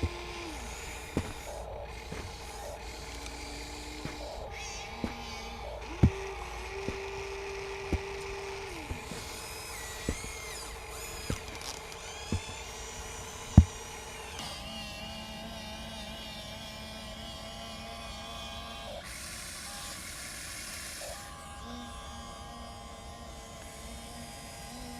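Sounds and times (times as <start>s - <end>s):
sharp knocks and clicks: 0.0s - 14.0s
small electric motors whining: 0.0s - 24.9s.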